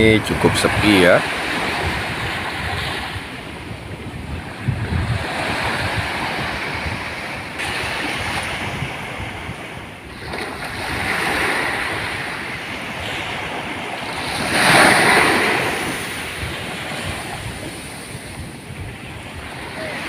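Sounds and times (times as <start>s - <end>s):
ocean surf breaking on a beach: 0.0s - 20.0s.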